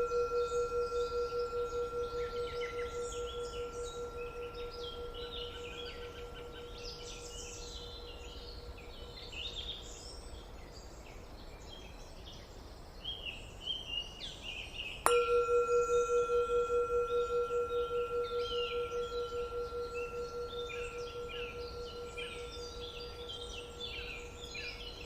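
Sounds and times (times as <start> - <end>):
singing bowl ringing: 0.0 - 10.0, 15.0 - 25.0
birds chirping: 0.0 - 10.1, 15.0 - 25.0.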